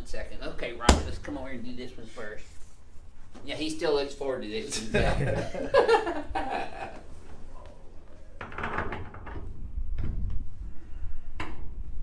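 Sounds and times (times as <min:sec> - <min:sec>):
soft knocks on a table: 0:00.9 - 0:01.4.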